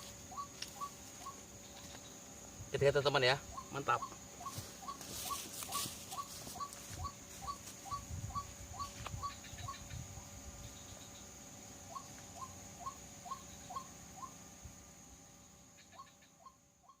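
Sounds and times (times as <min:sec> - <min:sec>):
bird calling repeated notes: 0:00.0 - 0:02.1, 0:03.4 - 0:10.0, 0:11.9 - 0:14.4, 0:15.8 - 0:17.0.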